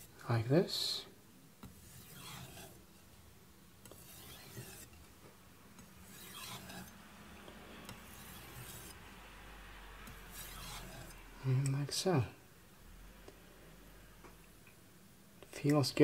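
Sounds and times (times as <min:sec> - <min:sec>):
knife scraping on whetstone: 0:01.6 - 0:02.9, 0:03.8 - 0:05.0, 0:05.8 - 0:07.0, 0:07.8 - 0:09.0, 0:10.1 - 0:11.2.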